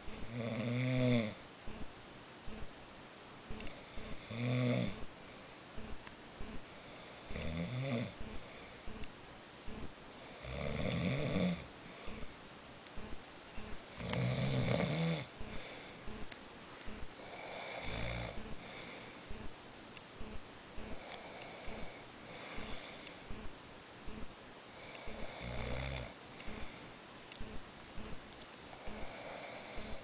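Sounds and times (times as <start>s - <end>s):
quiet breathing: 0.0s - 2.8s, 3.4s - 30.0s
rattling snores: 0.1s - 1.4s, 3.6s - 5.0s, 7.0s - 8.2s, 10.3s - 11.7s, 14.0s - 15.3s, 17.2s - 18.4s, 24.8s - 26.1s.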